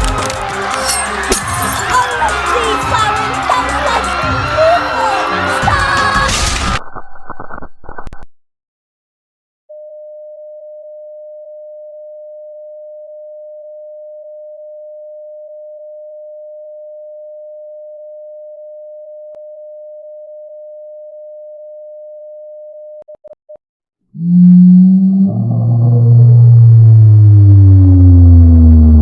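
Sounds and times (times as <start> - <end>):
loud low ringing tone: 24.2 - 29.0.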